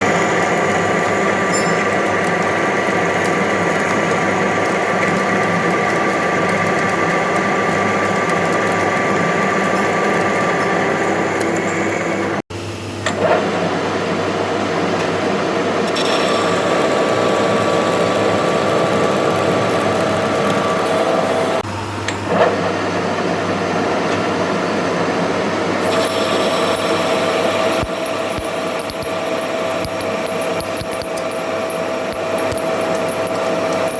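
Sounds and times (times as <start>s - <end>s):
machine tool cutting metal: 0.0s - 12.4s, 15.9s - 21.6s, 25.8s - 33.9s.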